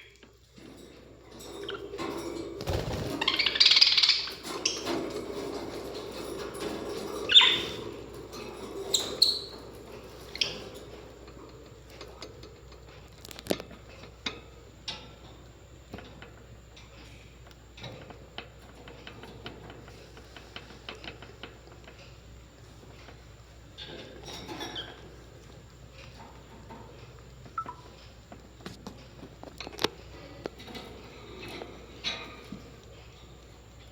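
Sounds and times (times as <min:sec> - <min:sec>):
birds chirping: 0:02.7 - 0:05.1, 0:07.2 - 0:11.0, 0:27.4 - 0:28.0.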